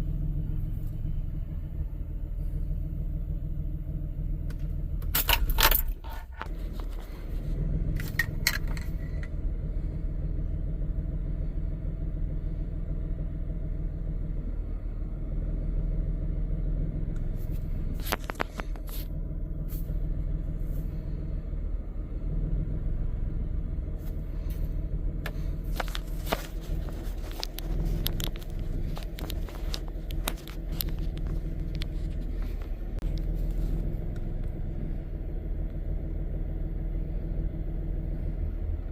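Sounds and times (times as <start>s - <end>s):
car engine idling: 0.0s - 38.9s
clicks and scrapes: 4.5s - 9.3s, 17.4s - 19.1s, 25.3s - 34.3s.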